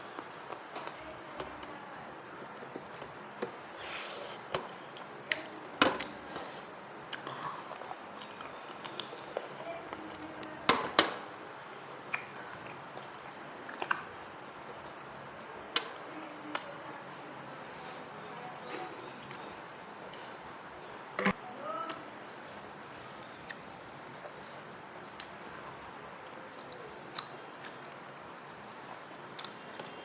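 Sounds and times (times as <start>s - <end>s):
person eating: 2.4s - 10.4s, 12.0s - 15.6s, 17.6s - 30.0s.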